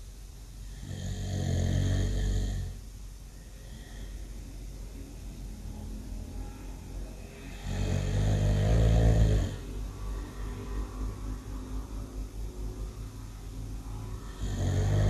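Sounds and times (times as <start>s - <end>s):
person snoring loudly: 0.6s - 2.8s, 7.5s - 10.4s, 14.2s - 15.0s
low breathing: 2.0s - 4.7s, 8.7s - 12.9s.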